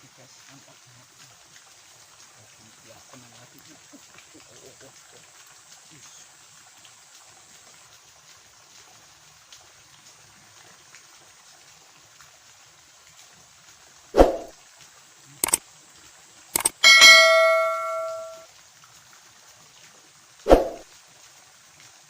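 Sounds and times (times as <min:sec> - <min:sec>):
metal struck and ringing: 0:16.6 - 0:18.4
sharp clicks: 0:16.6 - 0:18.4.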